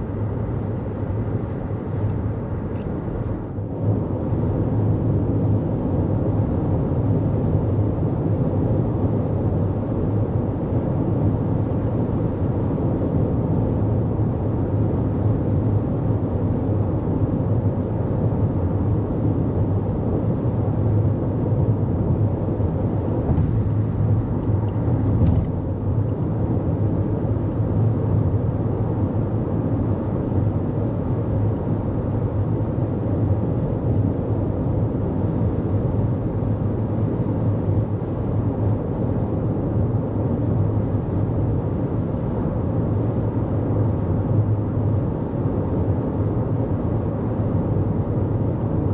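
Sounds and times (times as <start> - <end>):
car engine: 22.3 - 26.2.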